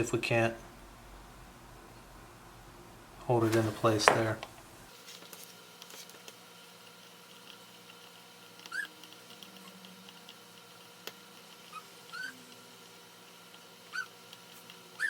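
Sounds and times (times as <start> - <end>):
faint steady hum: 0.0 - 15.0
high animal squeaks: 8.7 - 9.0, 11.6 - 12.5, 13.9 - 14.2.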